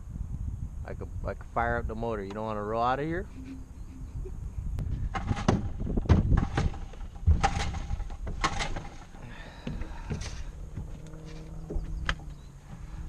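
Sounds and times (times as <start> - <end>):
knocks and clunks in a boat: 5.0 - 11.0, 11.6 - 13.0.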